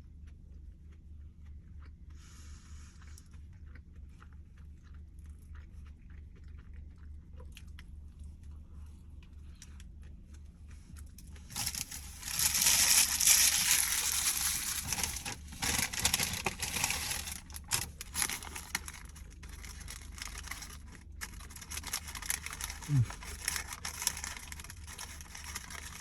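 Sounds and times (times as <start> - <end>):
food packaging crinkling: 11.3 - 26.0.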